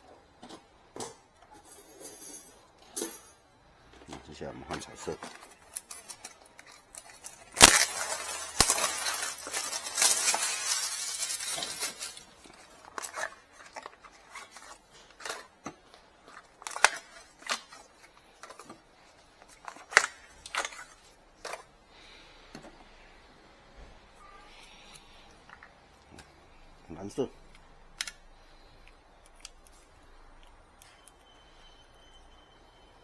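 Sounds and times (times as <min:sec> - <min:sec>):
rustling and crinkling: 0:04.0 - 0:21.7
small parts clicking and tapping: 0:04.1 - 0:18.8, 0:27.5 - 0:31.3.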